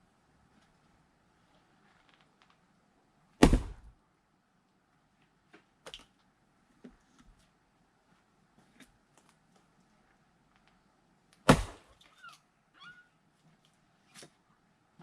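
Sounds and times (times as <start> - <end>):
axe splitting log: 3.4 - 3.9, 11.4 - 11.9
faint short squeaks: 12.0 - 13.2.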